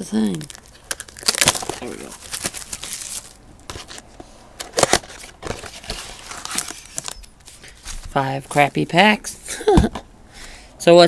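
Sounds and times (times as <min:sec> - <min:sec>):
packaging crinkling: 0:00.0 - 0:04.1, 0:04.7 - 0:08.7
packaging tearing: 0:00.2 - 0:04.1.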